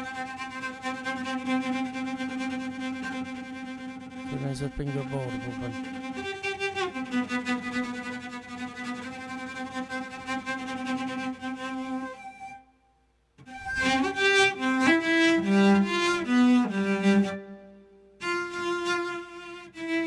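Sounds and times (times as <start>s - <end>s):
synthesizer bowed string notes: 0.0s - 11.9s.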